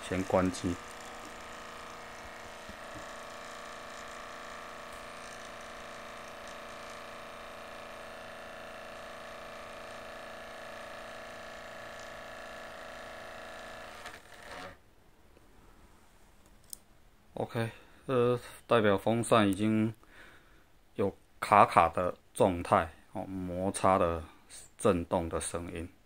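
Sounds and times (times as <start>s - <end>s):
laptop fan whirring drone: 0.0s - 14.7s.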